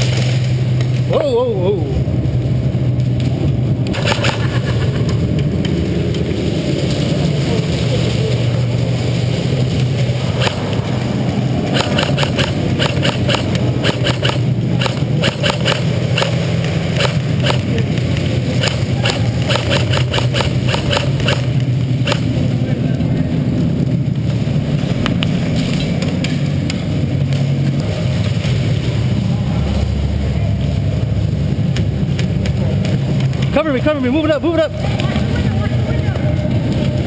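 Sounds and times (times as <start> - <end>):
steady low drone: 0.0 - 37.0
airsoft gunfire clicks and cracks: 3.9 - 4.7, 10.3 - 11.0, 11.7 - 22.3.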